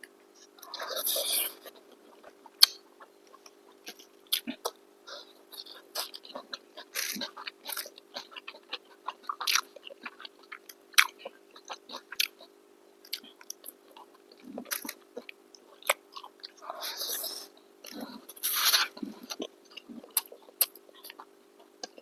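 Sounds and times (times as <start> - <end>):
people chewing food: 0.0 - 22.0.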